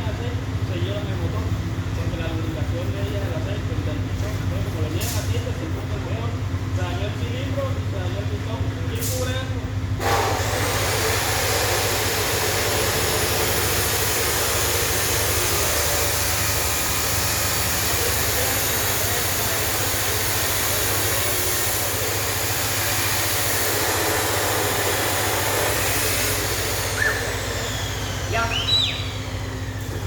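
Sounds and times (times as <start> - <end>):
chainsaw engine running: 10.0 - 30.0.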